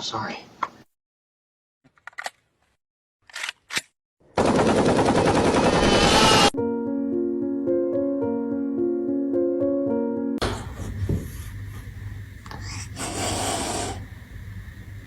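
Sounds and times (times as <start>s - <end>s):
loud rapid rattling burst: 4.4s - 6.5s
keyboard music with held notes: 6.6s - 10.4s.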